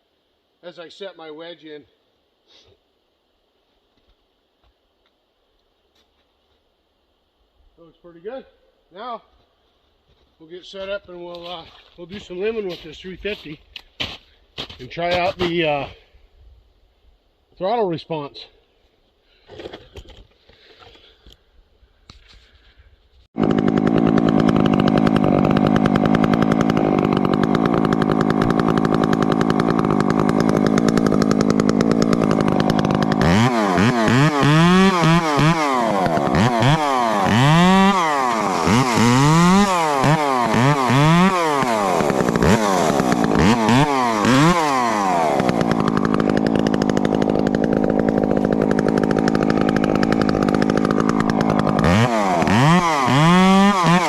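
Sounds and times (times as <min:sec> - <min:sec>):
chainsaw revving: 0:23.4 - 0:54.0.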